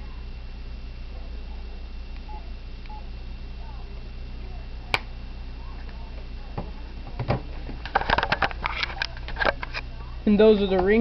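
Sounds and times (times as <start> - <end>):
phone handling clicks and rattles: 7.2 - 9.9.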